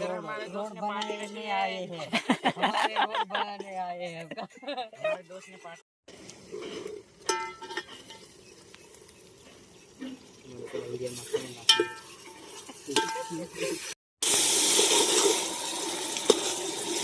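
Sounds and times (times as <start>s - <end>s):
food sizzling in pot: 6.1s - 17.0s
metal utensil clinking on pot: 6.6s - 8.4s, 10.0s - 13.4s.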